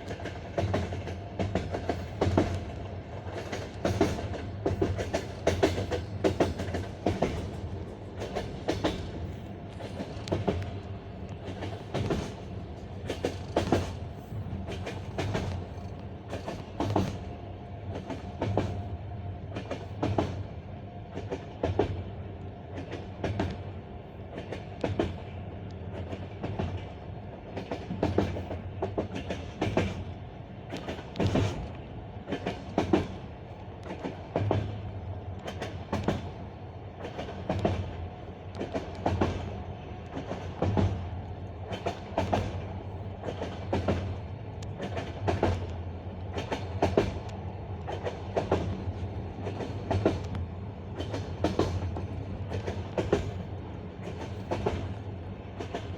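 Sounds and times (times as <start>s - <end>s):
train wheels clattering over rail joints: 0.1s - 10.8s, 11.4s - 17.3s, 27.6s - 30.1s, 30.7s - 33.2s, 33.9s - 34.8s, 37.0s - 38.0s, 38.6s - 47.3s, 47.9s - 55.9s.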